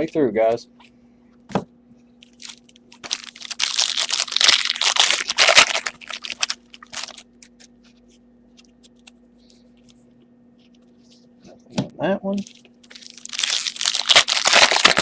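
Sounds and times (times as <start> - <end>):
wrapper tearing and crinkling: 2.2 - 7.3, 12.4 - 15.0.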